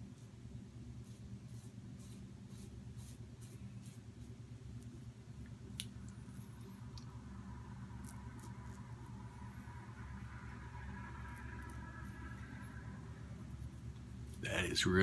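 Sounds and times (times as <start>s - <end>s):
steady low hum: 0.0s - 15.0s
rasping strokes on skin: 1.0s - 4.4s.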